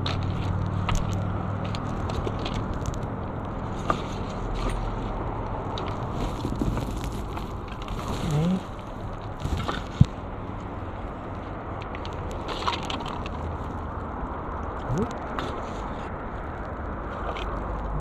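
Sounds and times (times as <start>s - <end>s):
plastic litter crackling: 6.0s - 10.2s.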